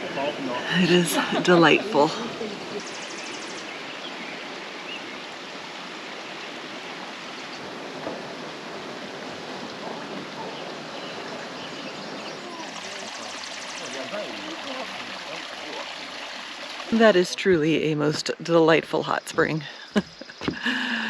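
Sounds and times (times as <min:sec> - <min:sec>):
faint voices: 0:00.0 - 0:03.2, 0:09.6 - 0:15.9
flowing water rushing: 0:00.0 - 0:21.0.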